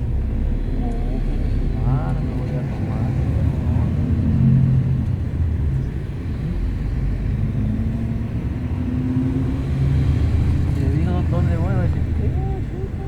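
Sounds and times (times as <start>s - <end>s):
bus engine and road rumble: 0.0s - 13.0s.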